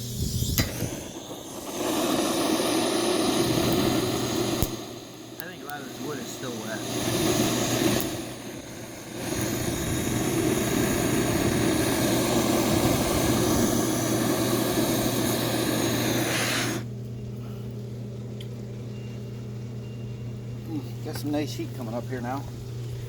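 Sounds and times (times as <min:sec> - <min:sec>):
water heater roaring rush: 0:00.0 - 0:18.3
low steady hum: 0:00.0 - 0:23.0.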